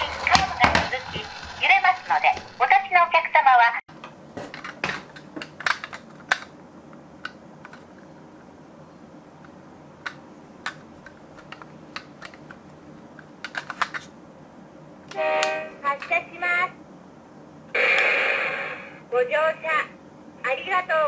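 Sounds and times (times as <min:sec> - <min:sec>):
toy cars clicking and tapping: 0:00.0 - 0:02.6.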